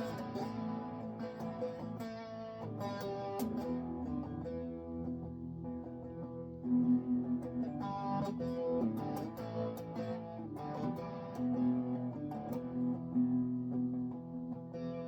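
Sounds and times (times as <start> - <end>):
electric guitar playing: 0.0 - 15.0.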